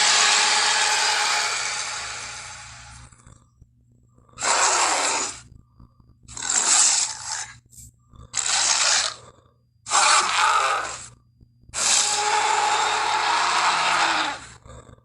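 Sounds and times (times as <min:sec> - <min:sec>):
faint steady low hum: 0:00.0 - 0:15.0
breathy hissing dinosaur growls: 0:04.3 - 0:05.5, 0:06.3 - 0:07.6, 0:08.2 - 0:11.2, 0:11.8 - 0:15.0.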